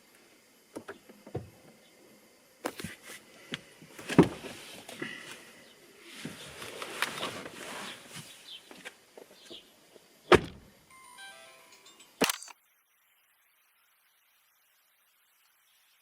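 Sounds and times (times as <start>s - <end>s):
clicks and knocks inside a car: 0.7s - 1.6s
rustling and shuffling: 2.7s - 9.6s.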